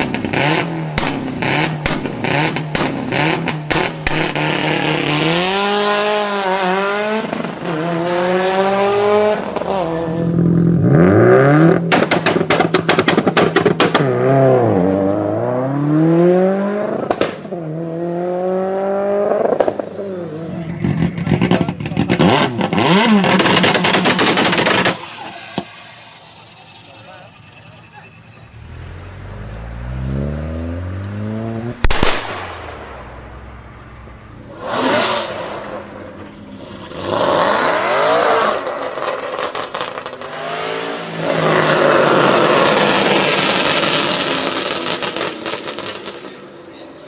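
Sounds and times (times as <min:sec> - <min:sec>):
exhaust popping and crackling: 0:00.0 - 0:06.5, 0:10.3 - 0:14.8, 0:20.8 - 0:25.8, 0:30.7 - 0:37.8, 0:38.4 - 0:40.4, 0:41.3 - 0:46.4
car engine revving: 0:00.0 - 0:46.7.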